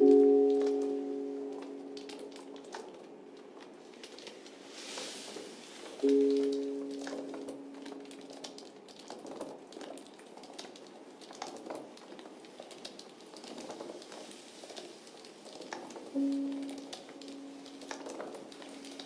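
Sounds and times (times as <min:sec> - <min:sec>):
soft crinkling and clicking: 0:00.0 - 0:19.0.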